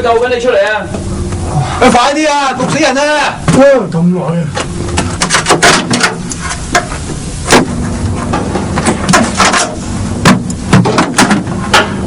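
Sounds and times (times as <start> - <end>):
steady low hum: 0.0 - 12.0
sharp knocks: 5.0 - 12.0.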